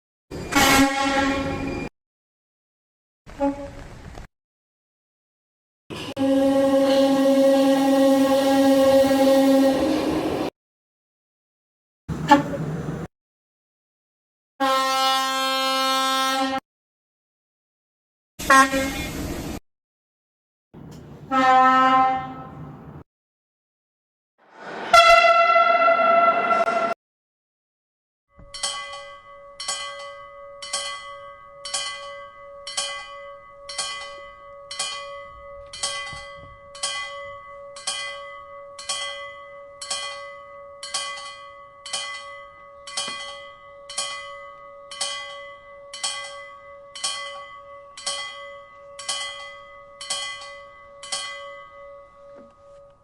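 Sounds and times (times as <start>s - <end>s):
steady ringing tone: 28.4s - 52.8s.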